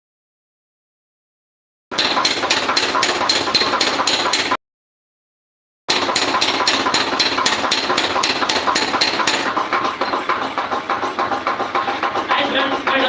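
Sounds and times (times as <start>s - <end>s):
hammer striking iron on anvil: 1.9s - 4.6s, 5.9s - 13.0s.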